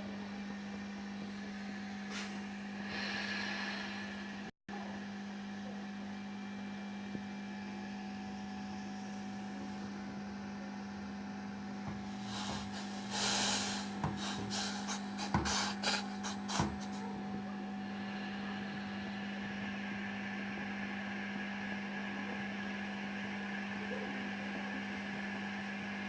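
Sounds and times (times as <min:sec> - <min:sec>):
steady electrical hum: 0:08.3 - 0:17.1.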